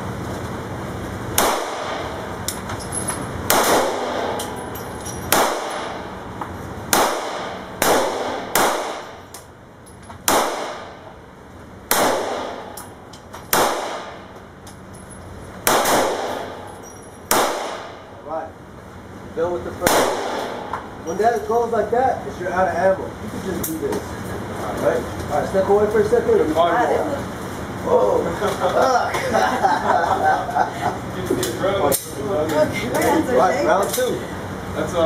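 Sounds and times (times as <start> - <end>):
pistol shots with echo: 1.4 - 2.2, 3.5 - 4.6, 5.3 - 6.2, 6.9 - 9.2, 10.2 - 11.1, 11.9 - 12.8, 13.5 - 14.3, 15.6 - 16.7, 17.3 - 18.1, 19.8 - 20.7.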